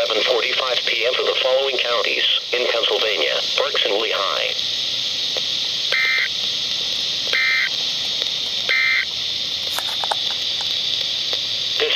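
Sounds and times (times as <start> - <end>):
radio hiss: 0.0 - 11.9
digital data tone bursts: 5.9 - 6.3, 7.3 - 7.7, 8.7 - 9.1.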